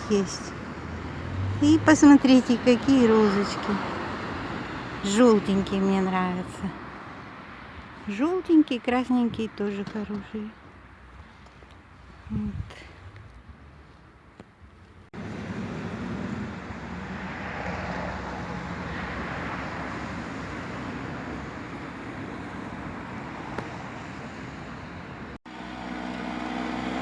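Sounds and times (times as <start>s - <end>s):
passing cars rushing: 0.0s - 8.0s, 15.2s - 27.0s
low engine hum: 15.2s - 27.0s.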